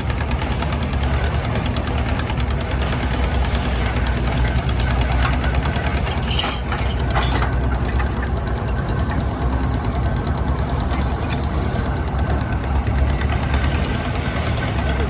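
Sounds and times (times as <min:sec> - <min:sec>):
excavator engine chugging: 0:00.0 - 0:15.0
metallic clanks from machinery: 0:02.7 - 0:13.7.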